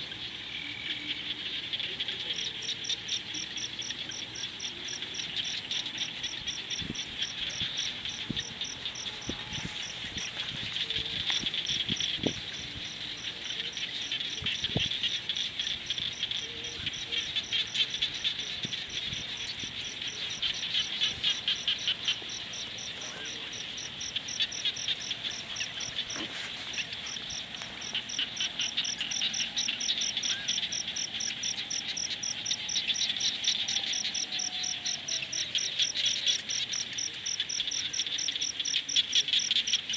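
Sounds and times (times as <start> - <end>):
frogs calling: 0.0 - 39.9
insects trilling: 0.0 - 39.9
campfire crackling: 15.0 - 30.2.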